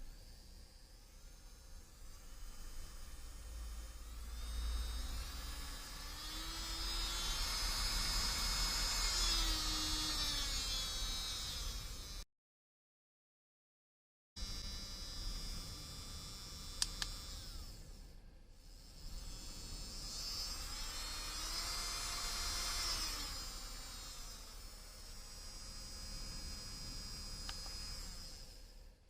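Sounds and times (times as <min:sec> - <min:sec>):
electric nail drill whining: 0:00.0 - 0:12.2, 0:14.4 - 0:29.0
short clicks: 0:16.8 - 0:17.2.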